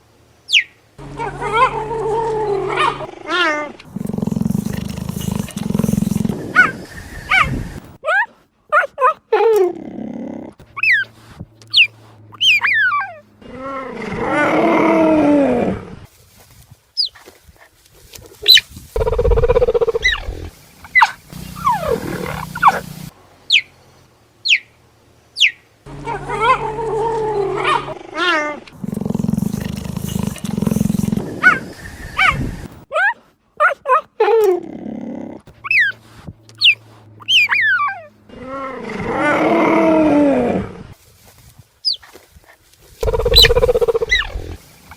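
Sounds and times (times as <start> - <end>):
cheetah yowling: 0.6 - 7.7, 11.7 - 15.7, 18.5 - 23.7, 25.4 - 32.6, 35.6 - 36.0, 36.6 - 40.8, 43.0 - 44.6
cheetah growling: 1.0 - 7.9, 9.3 - 16.1, 19.0 - 23.2, 25.9 - 32.8, 34.2 - 41.0, 43.0 - 44.9
cheetah chirping: 3.9 - 7.8, 10.7 - 13.2, 18.4 - 23.8, 24.4 - 24.8, 25.4 - 28.0, 28.8 - 32.6, 35.6 - 36.0, 36.6 - 38.1, 41.8 - 42.1, 43.0 - 44.9.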